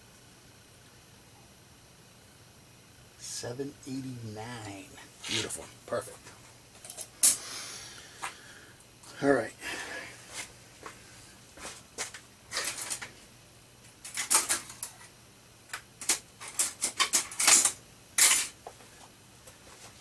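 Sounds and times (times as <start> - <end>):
small tools clicking and tapping: 15.7 - 18.6.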